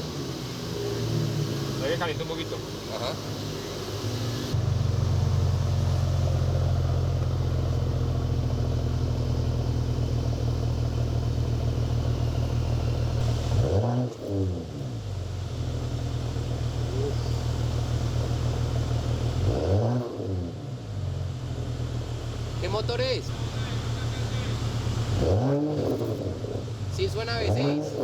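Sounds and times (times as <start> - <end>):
car engine idling: 0.0 - 19.7, 20.3 - 28.0.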